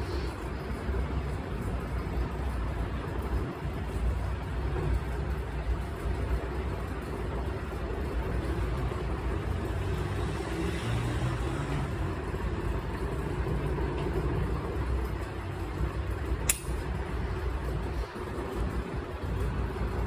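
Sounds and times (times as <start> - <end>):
sharp click: 16.4 - 16.8.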